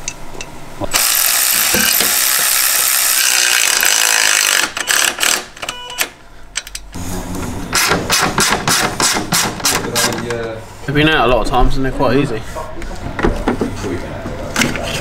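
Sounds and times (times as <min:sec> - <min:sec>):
tool clicking and ratcheting: 0:00.9 - 0:05.8.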